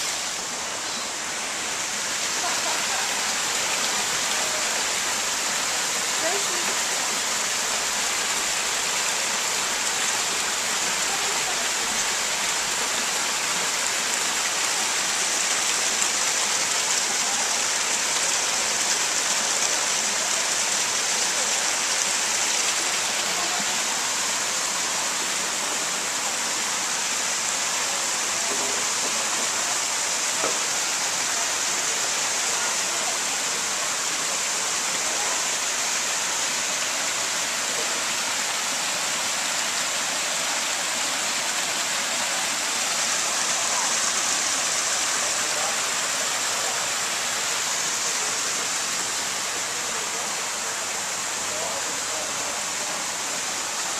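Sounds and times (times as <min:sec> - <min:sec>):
small waterfall rushing: 0:00.0 - 0:53.9.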